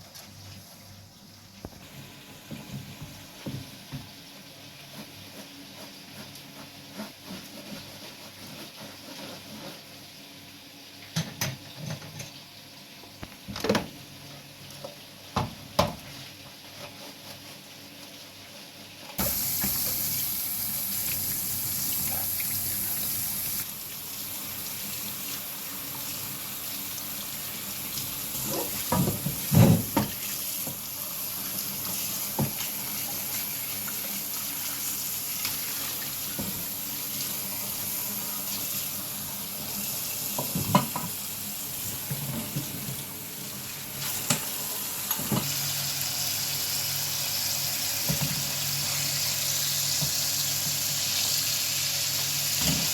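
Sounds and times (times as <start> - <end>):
tap water running into sink: 1.6 - 4.2, 19.2 - 46.2, 47.4 - 51.5.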